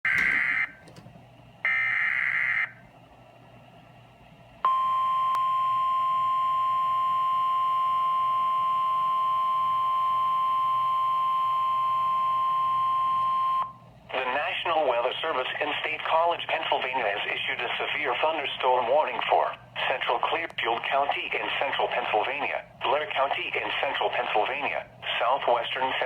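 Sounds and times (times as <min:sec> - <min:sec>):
steady warning alarm tone: 0:00.0 - 0:02.9, 0:04.6 - 0:13.7.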